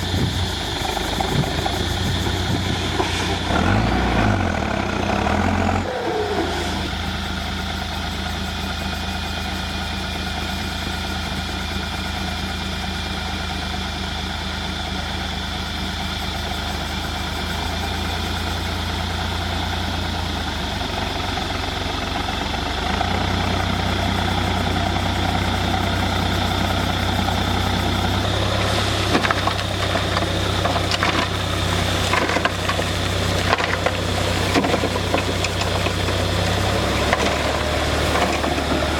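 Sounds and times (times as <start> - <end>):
heavy diesel engine running: 0.0 - 38.9
sharp knocks and clatter: 28.2 - 38.9.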